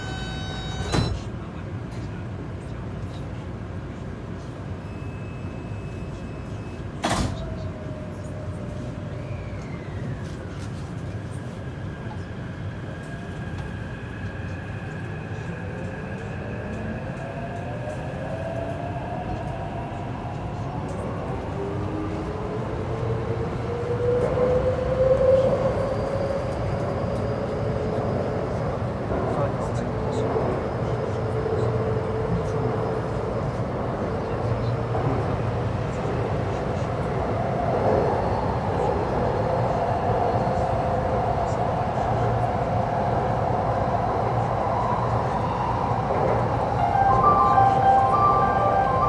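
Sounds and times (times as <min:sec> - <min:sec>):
traction motor whine: 0:00.0 - 0:01.1
train rumble: 0:06.0 - 0:49.0.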